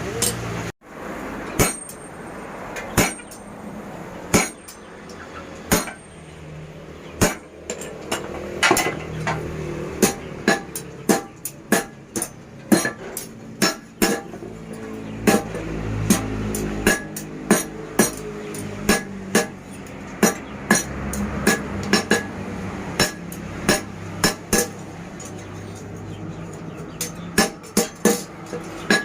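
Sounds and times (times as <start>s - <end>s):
hammer blows ringing on metal: 1.5s - 3.6s, 4.3s - 4.9s, 5.7s - 6.4s, 7.2s - 24.8s, 26.9s - 29.0s.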